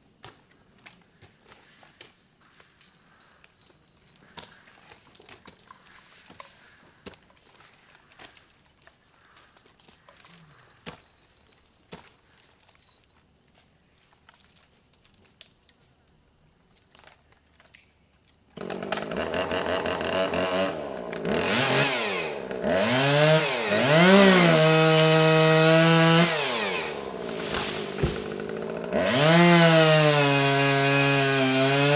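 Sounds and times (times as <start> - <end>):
chainsaw revving and sawing: 18.6 - 31.9.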